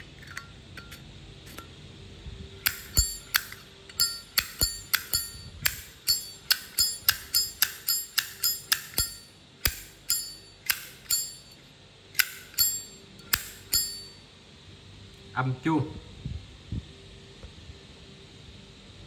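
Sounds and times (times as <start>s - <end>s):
lighter lid clicking open and shut: 2.6s - 3.7s, 4.4s - 11.2s, 12.2s - 13.8s.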